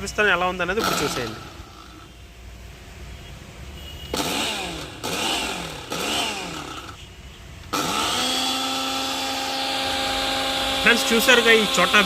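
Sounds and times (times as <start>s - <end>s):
spice grinder motor whining: 7.7s - 12.0s.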